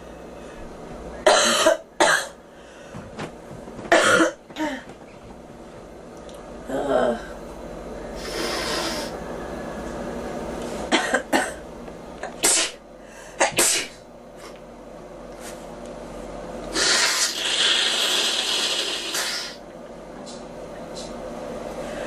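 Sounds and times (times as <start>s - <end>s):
girl coughing: 1.3s - 2.4s, 3.9s - 4.9s, 10.9s - 11.6s, 12.4s - 12.8s, 13.4s - 14.0s
hissing breath: 8.2s - 9.2s, 16.7s - 19.6s.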